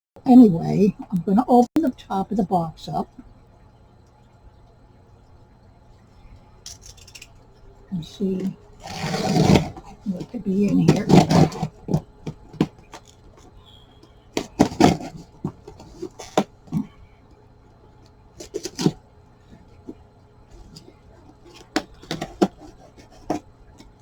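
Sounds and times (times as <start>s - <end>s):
cardboard flaps clicking and scraping: 8.4s - 13.5s, 14.4s - 16.9s, 18.4s - 19.0s, 20.6s - 24.0s
packing tape tearing: 8.8s - 10.0s, 10.7s - 13.2s, 14.4s - 16.9s, 18.4s - 19.0s.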